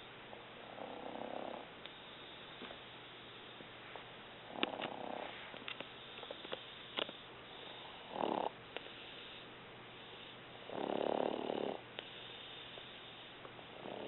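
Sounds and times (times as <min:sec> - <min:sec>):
woman snoring: 0:00.7 - 0:01.7, 0:07.7 - 0:08.6, 0:10.7 - 0:11.8, 0:13.8 - 0:14.0.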